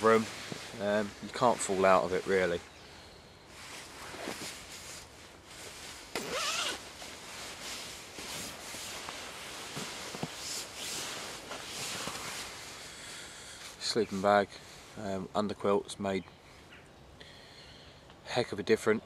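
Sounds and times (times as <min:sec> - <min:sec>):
fabric rustling and scraping: 0:00.0 - 0:02.6, 0:03.5 - 0:12.8.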